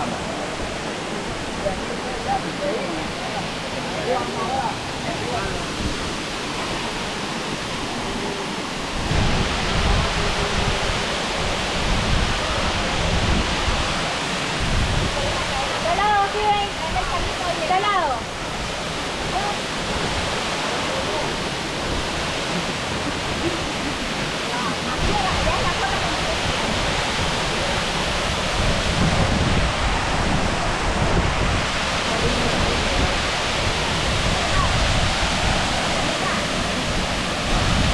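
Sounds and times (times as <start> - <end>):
waterfall rushing: 0.0 - 37.9
wind buffeting microphone: 8.8 - 37.9.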